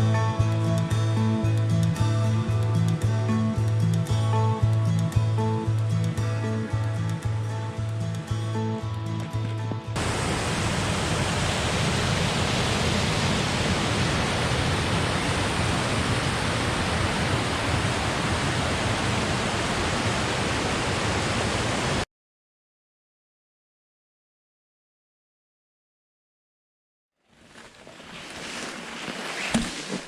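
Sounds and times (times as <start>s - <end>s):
rushing creek water: 10.0s - 22.0s, 27.4s - 30.0s.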